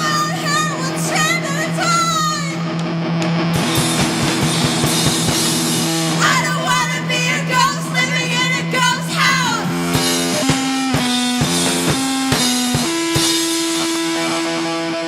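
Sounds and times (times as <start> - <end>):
vocals: 0.0 - 2.7, 6.1 - 10.5
distorted guitar droning: 0.0 - 15.0
drums: 0.0 - 15.0.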